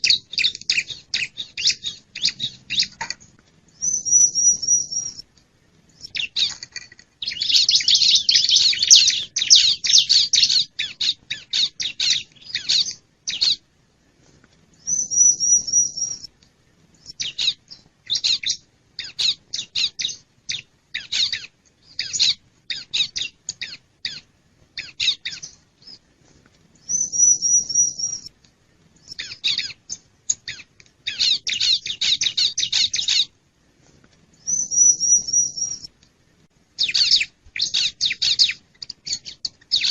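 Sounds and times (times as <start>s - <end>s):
high bird trill: 0.0s - 3.0s, 3.8s - 5.2s, 7.2s - 13.6s, 14.8s - 16.3s, 26.8s - 28.3s, 29.0s - 33.3s, 34.4s - 35.9s, 36.8s - 39.9s.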